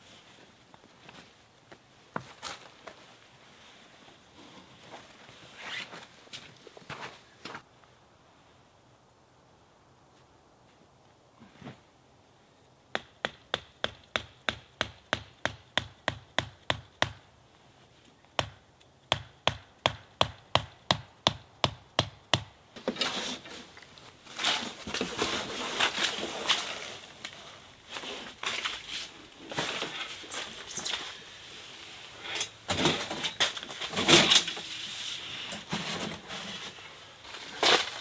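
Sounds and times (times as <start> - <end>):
crackling and rustling: 22.8 - 38.0.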